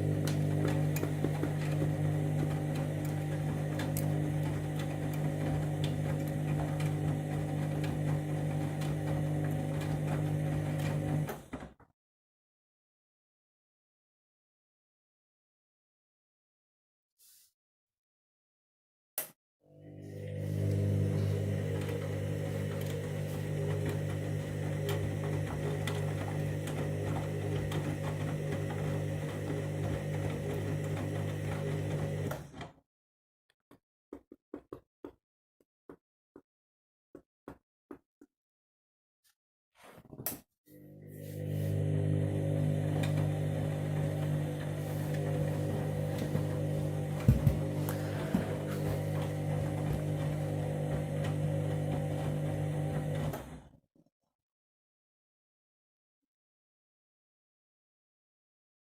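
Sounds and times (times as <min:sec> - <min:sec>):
washing machine motor humming: 0:00.0 - 0:11.7, 0:19.7 - 0:32.7, 0:40.7 - 0:53.7.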